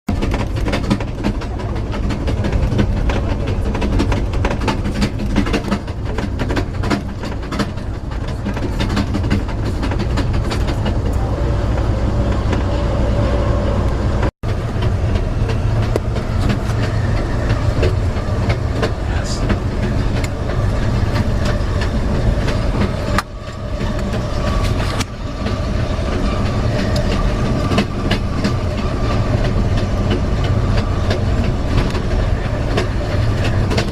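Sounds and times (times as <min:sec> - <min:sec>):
heavy train rumble: 0:00.1 - 0:33.9
train wheels clickety-clack: 0:00.1 - 0:33.9.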